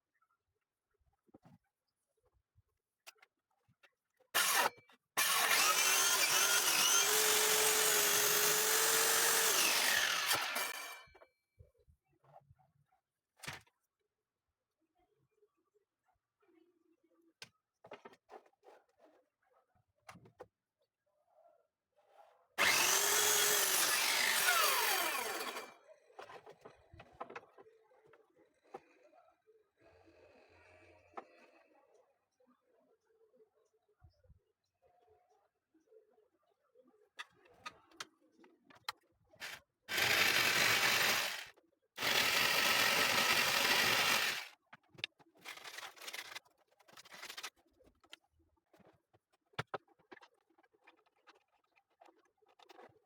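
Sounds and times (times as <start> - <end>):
circular saw cutting wood: 4.4 - 11.1, 22.6 - 25.8, 39.4 - 44.5.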